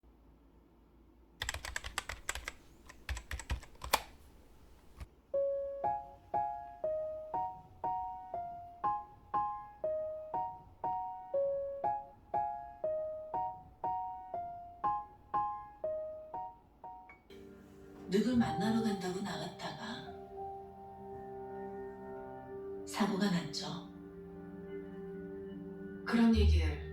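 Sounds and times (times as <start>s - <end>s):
computer keyboard typing: 1.4s - 5.1s
gentle piano-like melody: 5.0s - 26.9s.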